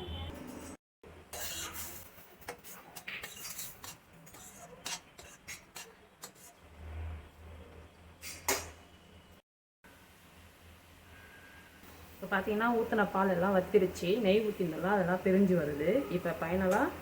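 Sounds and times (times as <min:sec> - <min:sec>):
spoon scraping a cooking pan: 0:01.3 - 0:06.8.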